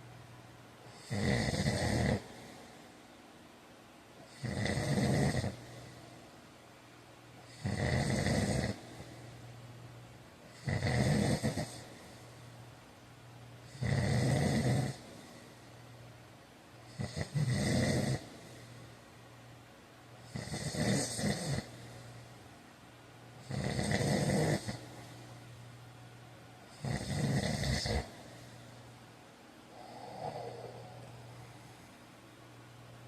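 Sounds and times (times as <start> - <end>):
man snoring: 0.9 - 2.6, 4.3 - 6.0, 7.5 - 9.2, 10.5 - 12.2, 13.6 - 15.4, 16.9 - 18.6, 20.2 - 21.8, 23.4 - 25.0, 26.7 - 28.5, 29.7 - 31.5
quiet breathing: 1.9 - 3.4, 5.2 - 6.6, 8.5 - 9.8, 11.4 - 12.9, 14.5 - 19.4, 20.2 - 22.7, 23.3 - 25.6, 26.6 - 32.8.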